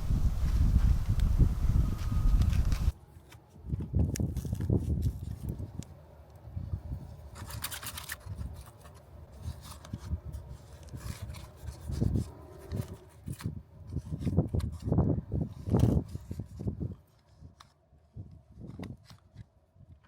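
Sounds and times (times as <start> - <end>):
irregular scraping and rubbing: 7.2 - 17.7.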